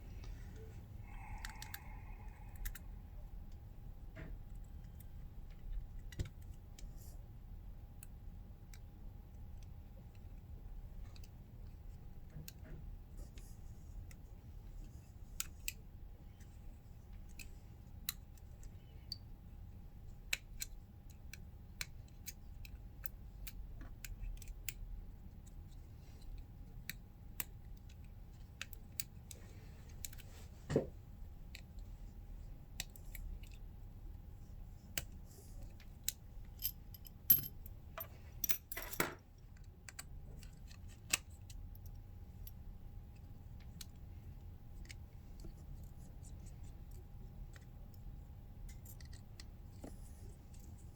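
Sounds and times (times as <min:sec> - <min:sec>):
faint steady hum: 0:00.0 - 0:50.9
small tools clicking and tapping: 0:48.7 - 0:49.9.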